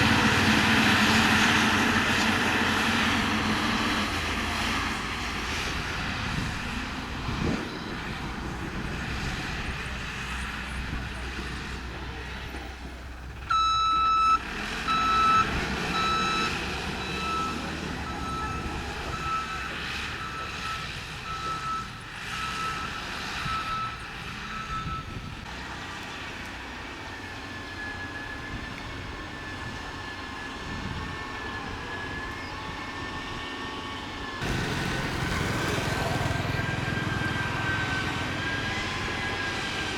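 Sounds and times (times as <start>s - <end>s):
diesel engine running: 0.0s - 39.9s
reversing alarm beeps: 13.5s - 25.3s, 27.3s - 33.4s.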